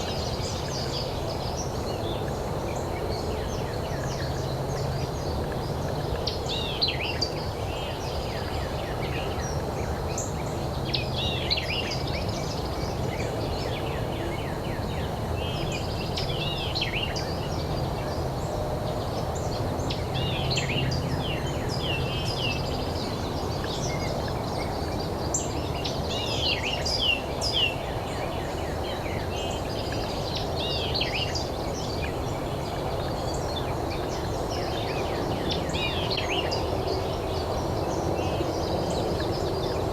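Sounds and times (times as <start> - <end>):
low outdoor background rush: 0.0 - 39.9.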